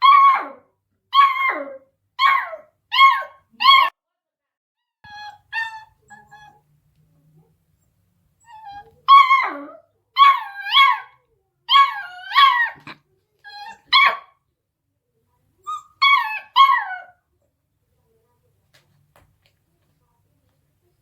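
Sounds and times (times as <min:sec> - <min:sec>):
puppy yipping: 0:05.0 - 0:06.6, 0:08.4 - 0:14.3, 0:15.6 - 0:17.2.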